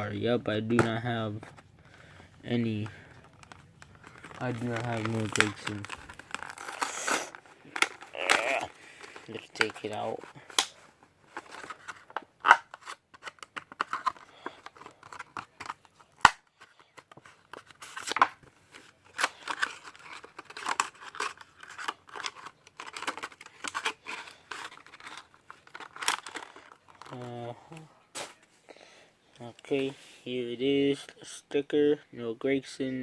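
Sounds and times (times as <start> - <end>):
packaging tearing and crinkling: 2.7 - 27.3.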